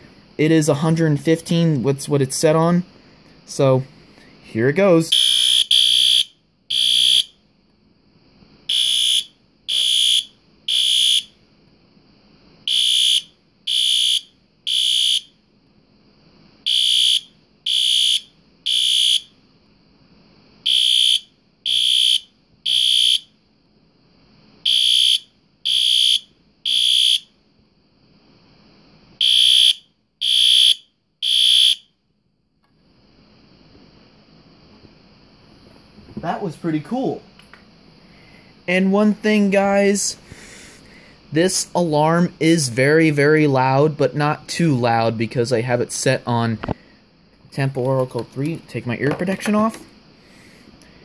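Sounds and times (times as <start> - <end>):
alarm horn blasts: 5.1 - 7.3, 8.7 - 11.3, 12.7 - 15.3, 16.7 - 19.3, 20.7 - 23.2, 24.7 - 27.2, 29.2 - 31.9.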